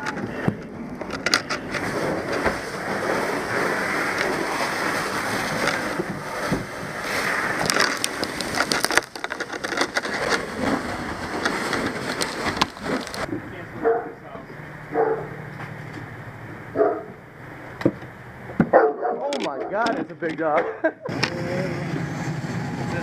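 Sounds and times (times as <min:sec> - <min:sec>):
sharp crackles and clatters: 0:00.0 - 0:13.6
water spraying and spattering: 0:01.6 - 0:13.3.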